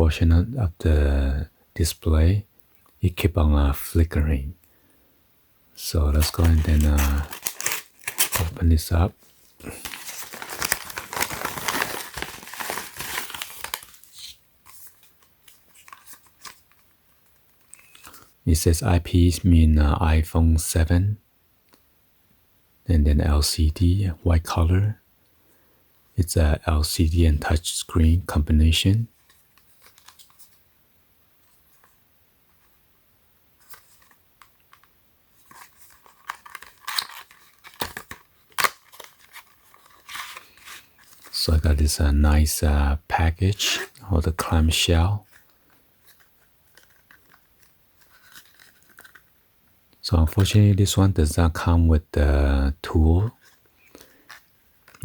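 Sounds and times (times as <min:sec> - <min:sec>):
plastic packaging crinkling: 0:05.8 - 0:18.2, 0:29.2 - 0:30.6, 0:33.6 - 0:41.4, 0:45.2 - 0:49.3.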